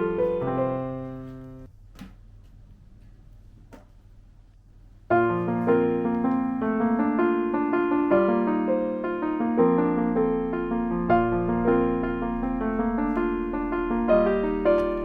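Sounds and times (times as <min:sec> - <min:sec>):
background piano music: 0:00.0 - 0:01.7, 0:05.1 - 0:15.0.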